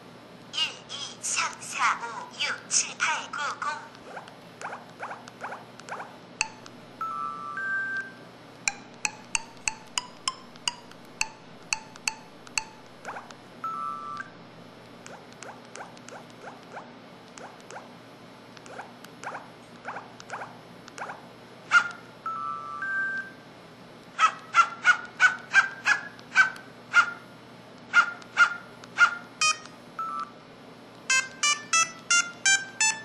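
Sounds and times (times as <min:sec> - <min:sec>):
electronic blips and clicks: 0:04.1 - 0:08.1, 0:08.7 - 0:14.4, 0:29.4 - 0:30.3
two-tone beeps: 0:06.4 - 0:08.2, 0:22.3 - 0:23.4, 0:29.4 - 0:30.3.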